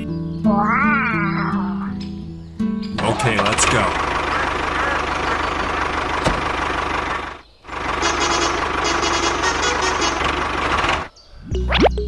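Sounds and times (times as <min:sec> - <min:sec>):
vehicle engine running: 0:03.0 - 0:11.1.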